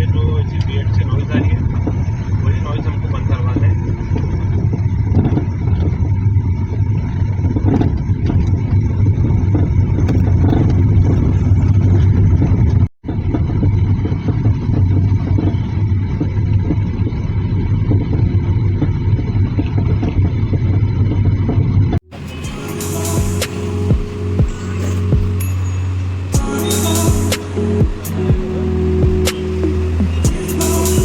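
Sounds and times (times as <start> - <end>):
car engine and road rumble: 0.0 - 31.0.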